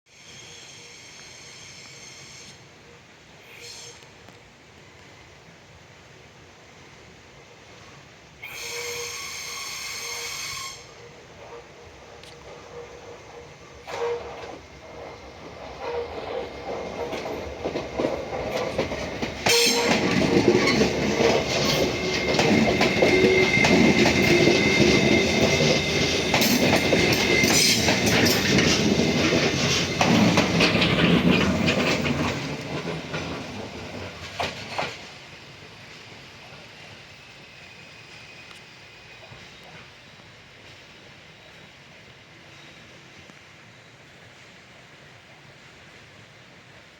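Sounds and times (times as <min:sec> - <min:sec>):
train wheels clattering over rail joints: 0:12.3 - 0:35.3.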